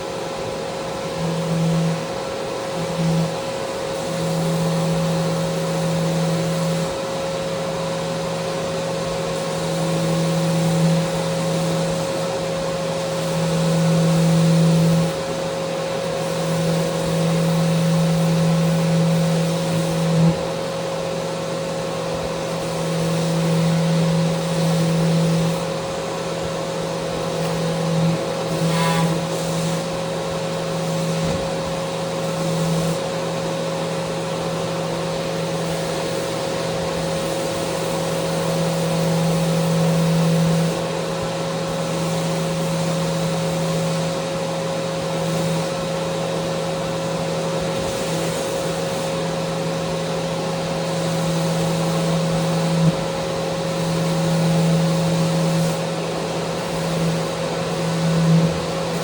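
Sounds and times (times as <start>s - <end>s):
power sander on wood: 9.6s - 33.4s, 46.6s - 59.0s.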